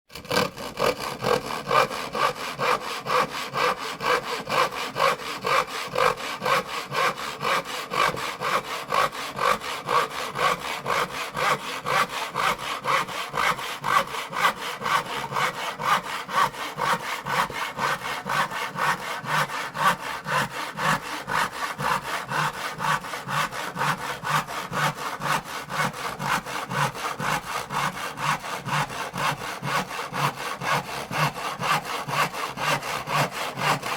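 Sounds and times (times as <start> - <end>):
hand saw cutting wood: 0.1 - 33.9.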